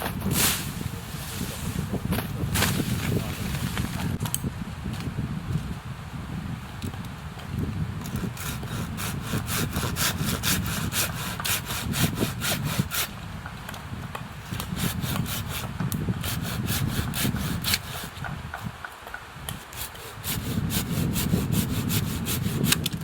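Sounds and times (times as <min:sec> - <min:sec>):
hand saw cutting wood: 0:08.0 - 0:13.2, 0:14.5 - 0:18.4, 0:19.5 - 0:23.0.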